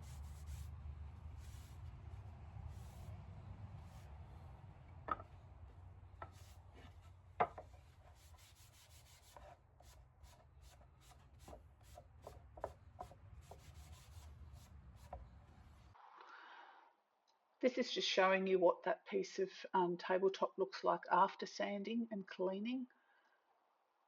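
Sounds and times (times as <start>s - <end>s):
steady low hum: 0.0s - 8.1s
wooden furniture clicks and knocks: 5.0s - 5.3s, 6.2s - 7.8s.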